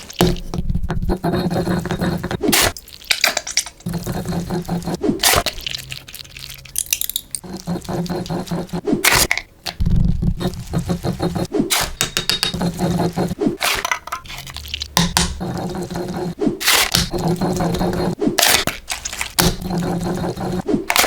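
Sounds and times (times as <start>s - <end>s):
liquid sounds: 1.2s - 9.3s.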